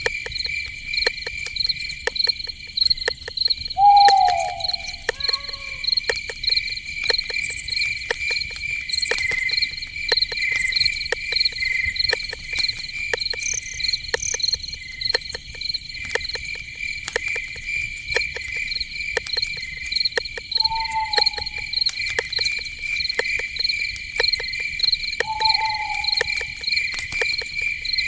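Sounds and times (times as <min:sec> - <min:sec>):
insects chirping: 0:00.0 - 0:28.0
sharp clicks and ticks: 0:00.0 - 0:28.0
falling animal call: 0:03.8 - 0:05.9, 0:20.6 - 0:21.8, 0:25.2 - 0:26.6.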